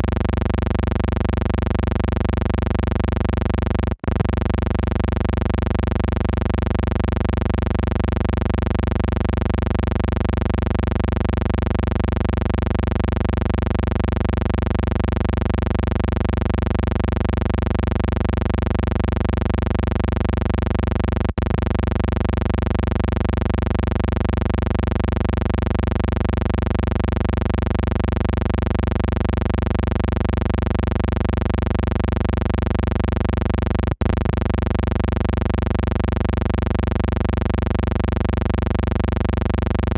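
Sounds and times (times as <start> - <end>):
steady electrical hum: 0.0 - 14.8.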